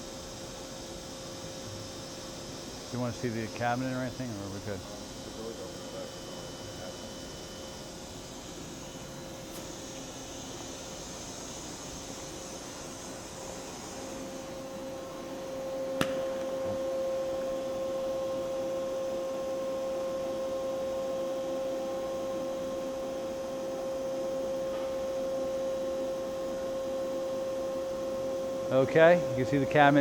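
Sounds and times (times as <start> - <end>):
machine electrical hum: 0.0 - 30.0.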